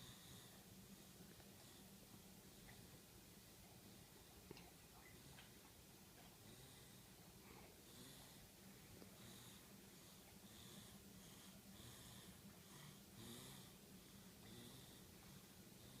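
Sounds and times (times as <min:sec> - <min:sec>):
steady low hum: 0:00.0 - 0:16.0
person snoring faintly: 0:09.1 - 0:16.0.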